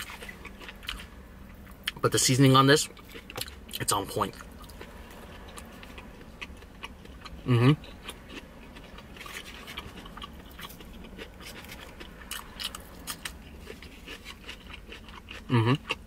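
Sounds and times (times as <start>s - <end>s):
person chewing food: 0.0s - 2.0s, 2.8s - 16.0s
person humming: 7.5s - 7.8s, 15.5s - 15.8s.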